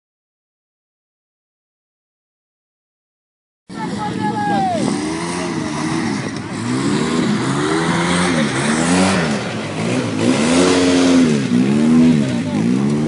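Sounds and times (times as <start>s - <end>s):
engine revving: 4.5s - 13.0s.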